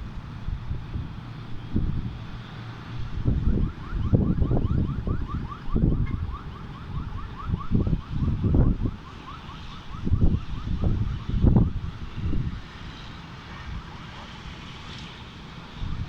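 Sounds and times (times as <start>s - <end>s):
wind buffeting microphone: 0.0s - 9.1s, 9.8s - 13.0s, 15.7s - 16.0s.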